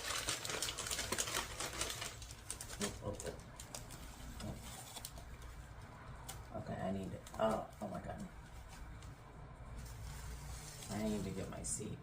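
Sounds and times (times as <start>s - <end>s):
thin sheet rustling and crinkling: 7.5s - 11.7s.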